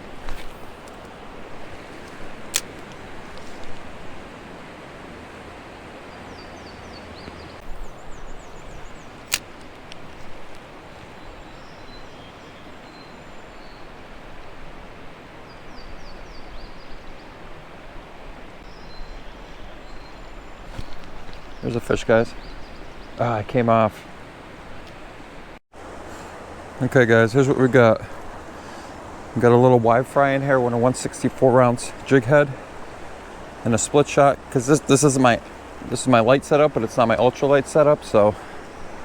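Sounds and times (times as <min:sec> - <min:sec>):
creek water flowing: 0:00.0 - 0:39.0
sharp clicks: 0:02.5 - 0:03.0, 0:09.2 - 0:10.6.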